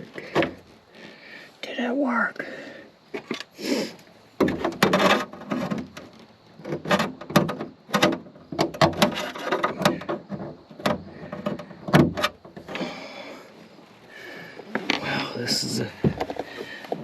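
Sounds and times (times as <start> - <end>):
hose fittings clicking and scraping: 4.4 - 13.0, 14.7 - 17.0.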